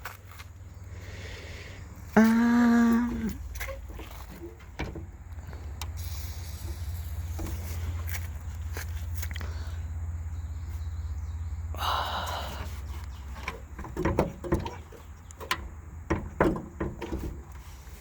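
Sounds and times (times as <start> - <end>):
knocks and clunks on a truck hood: 3.7 - 5.3, 13.4 - 17.6.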